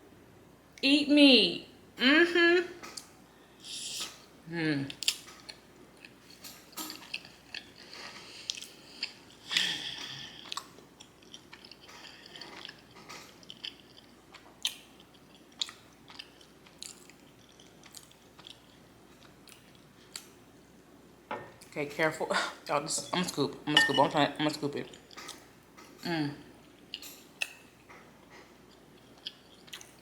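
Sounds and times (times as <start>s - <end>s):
chewing with wet mouth clicks: 4.9s - 9.4s, 10.4s - 20.4s, 26.6s - 30.0s.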